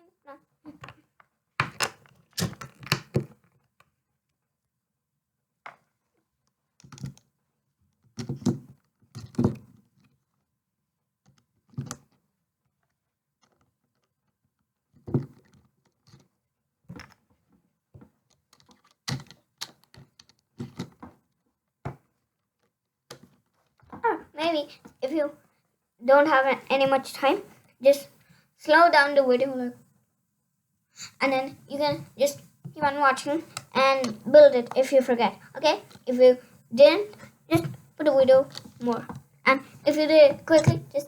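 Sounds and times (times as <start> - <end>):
plastic pieces knocking and clacking: 1.6 - 3.3.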